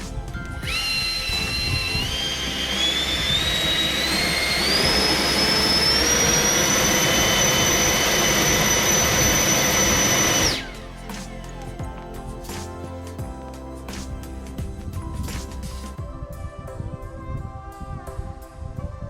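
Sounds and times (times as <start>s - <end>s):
electric ducted fan whine: 0.6s - 10.7s.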